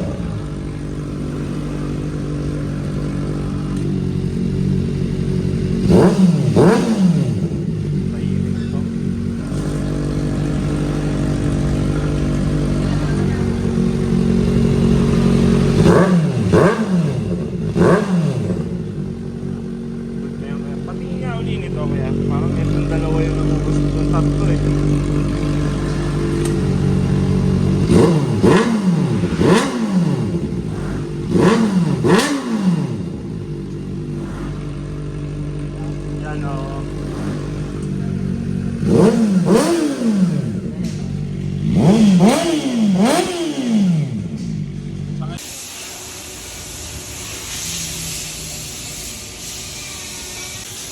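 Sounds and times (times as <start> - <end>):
motorcycle engine idling and revving: 0.0 - 50.9
sharp engine rev blips: 24.3 - 36.2, 36.8 - 44.6.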